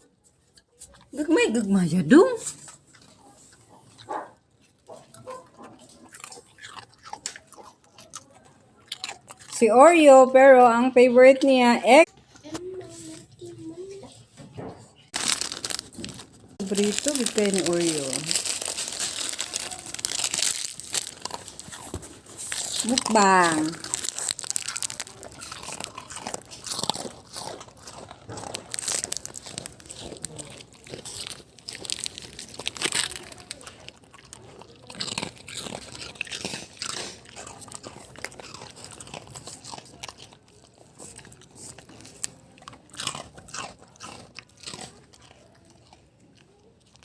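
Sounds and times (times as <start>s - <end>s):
dog crunching cookies: 0.0s - 10.4s, 15.1s - 47.0s.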